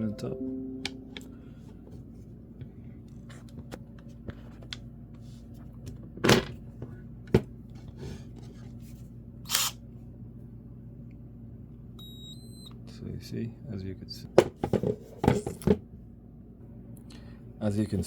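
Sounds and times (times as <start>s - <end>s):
steady low hum: 0.0s - 14.4s.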